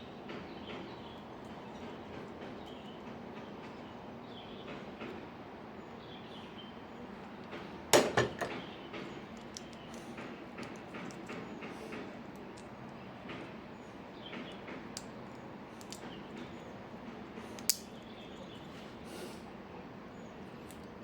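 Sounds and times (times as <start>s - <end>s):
sharp knocks clattering: 7.6s - 9.2s.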